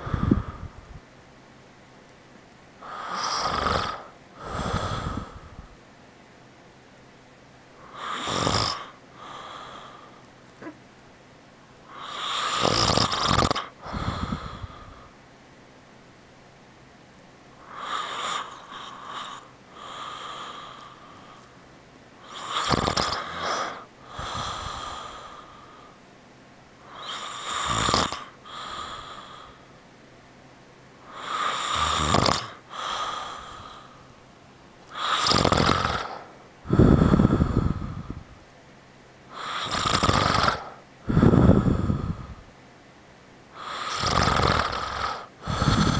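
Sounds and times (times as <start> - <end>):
man snoring: 2.8 - 5.5, 7.8 - 10.0, 11.9 - 14.9, 22.2 - 25.5, 26.9 - 29.6, 31.1 - 33.9, 34.9 - 38.2, 39.3 - 42.4, 43.6 - 45.9.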